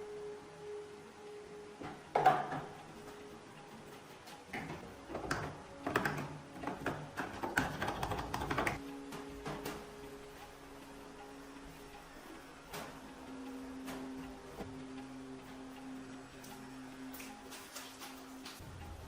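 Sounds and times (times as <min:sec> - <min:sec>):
faint steady tone: 0:00.0 - 0:04.5
hard objects clicking and knocking: 0:04.5 - 0:10.0.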